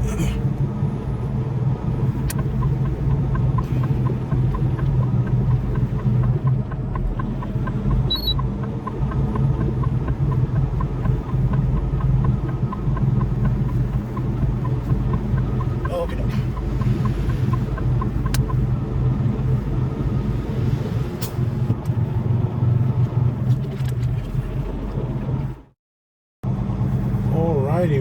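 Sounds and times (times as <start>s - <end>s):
truck engine and road drone: 0.0s - 25.8s, 26.4s - 28.0s
light regular ticking: 1.8s - 20.0s.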